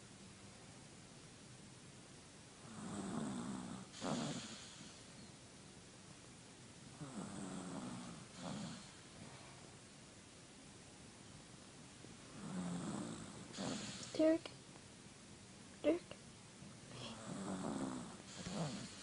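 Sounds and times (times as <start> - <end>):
dog snoring: 2.6 - 5.1, 6.9 - 9.0, 12.3 - 14.2, 16.9 - 19.0.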